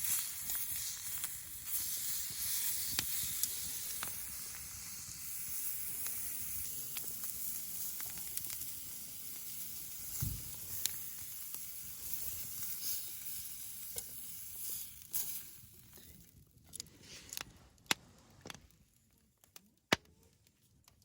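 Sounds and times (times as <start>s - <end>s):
meat sizzling: 0.0s - 16.2s.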